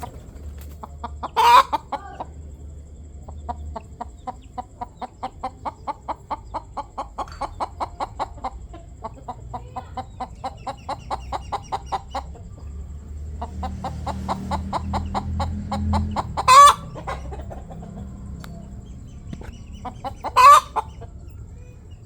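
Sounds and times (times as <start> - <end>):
chicken squawk: 0.0 - 2.6, 3.2 - 12.7, 13.4 - 22.0
chicken clucking: 0.0 - 22.0.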